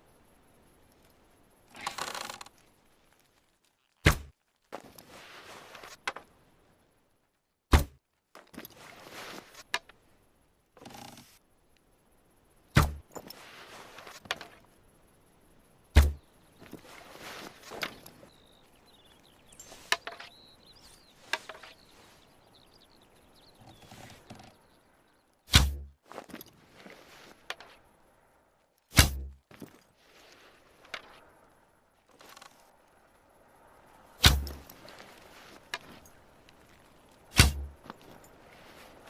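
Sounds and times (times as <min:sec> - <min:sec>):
arrow heavy thunks: 0:04.0 - 0:04.3, 0:07.7 - 0:08.0, 0:12.8 - 0:13.1, 0:16.0 - 0:16.2, 0:25.5 - 0:25.9, 0:28.9 - 0:29.4, 0:34.2 - 0:34.6, 0:37.3 - 0:37.8
soft hissing noise: 0:04.7 - 0:07.4, 0:08.6 - 0:25.5.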